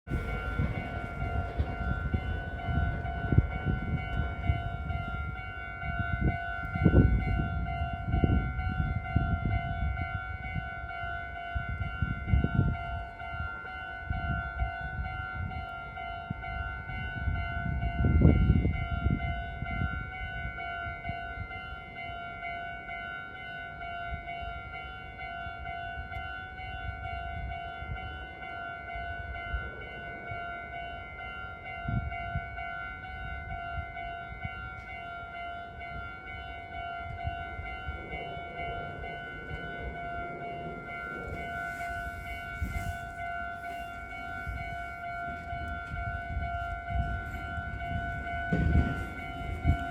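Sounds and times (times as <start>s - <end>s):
level crossing warning bell ringing: 0.0s - 49.9s
train rumbling across crossing: 0.0s - 49.9s.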